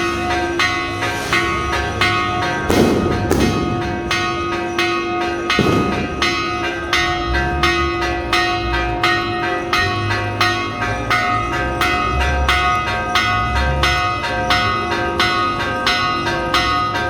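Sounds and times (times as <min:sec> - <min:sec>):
church bells pealing: 0:00.0 - 0:17.0.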